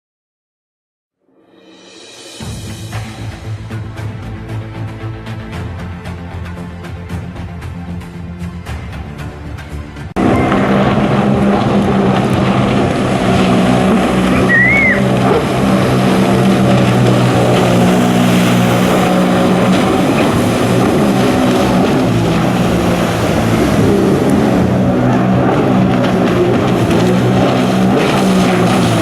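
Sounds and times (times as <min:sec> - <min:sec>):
music: 0:01.1 - 0:29.0
jet ski engines running: 0:02.5 - 0:29.0
short whistle: 0:14.3 - 0:15.1.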